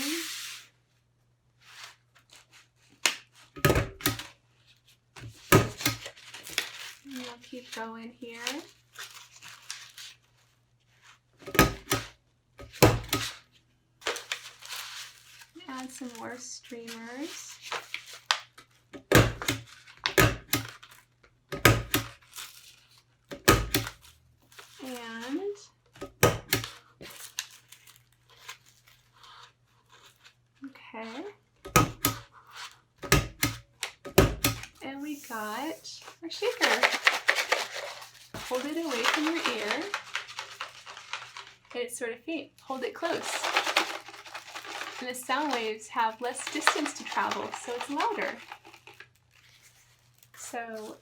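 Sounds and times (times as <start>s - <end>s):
heavy stapler thunks: 31.7s - 32.3s.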